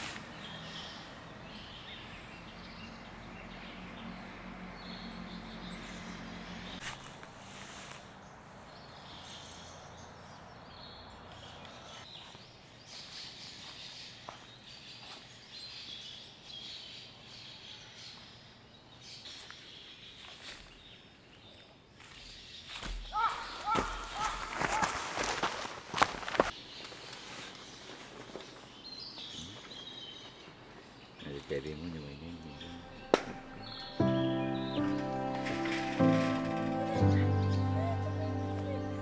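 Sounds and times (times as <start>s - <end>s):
birds singing: 0.0s - 6.9s, 28.7s - 39.0s
background hiss: 31.7s - 39.0s.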